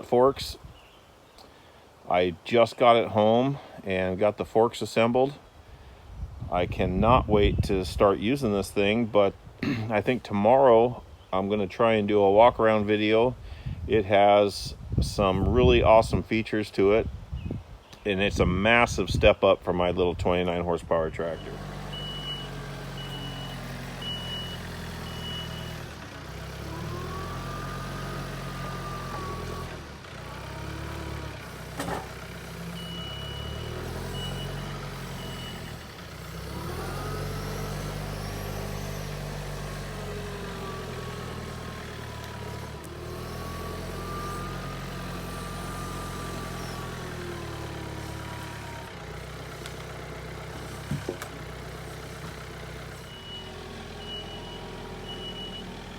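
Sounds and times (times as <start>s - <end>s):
diesel tractor running: 0.0s - 16.2s, 18.2s - 55.9s
beeping alarm: 21.4s - 25.8s, 32.8s - 35.7s, 53.1s - 55.7s.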